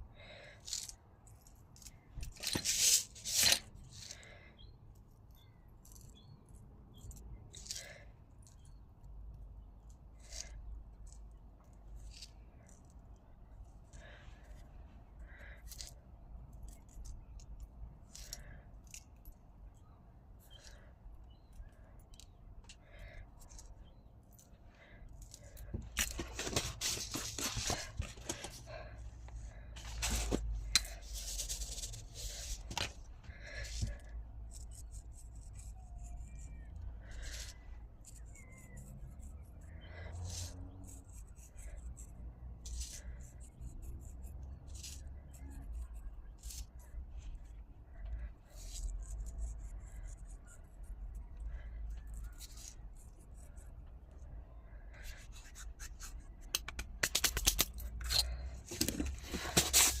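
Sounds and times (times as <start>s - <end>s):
rubbing and rustling: 2.2s - 4.2s, 25.3s - 34.7s, 55.0s - 60.0s.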